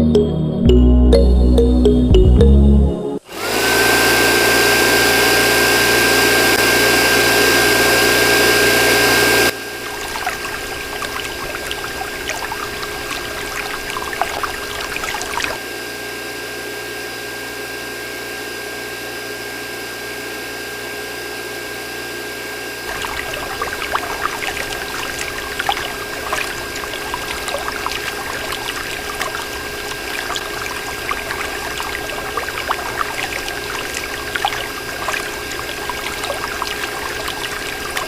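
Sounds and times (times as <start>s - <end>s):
steady high tone: 0.0s - 3.3s
water pouring from hand pump: 9.8s - 15.6s, 22.9s - 38.0s.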